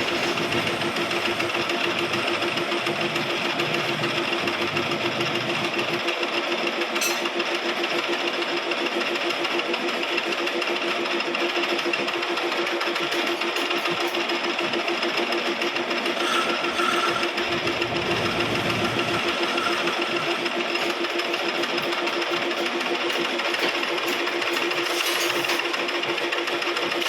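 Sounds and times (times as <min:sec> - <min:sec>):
lathe humming and rasping: 0:00.0 - 0:06.2, 0:12.5 - 0:25.0
high squeal: 0:16.1 - 0:21.0.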